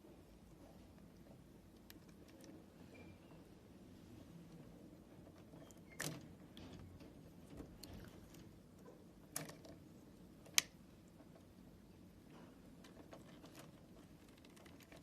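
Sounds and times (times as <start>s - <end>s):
wire connectors clicking: 10.4s - 10.8s.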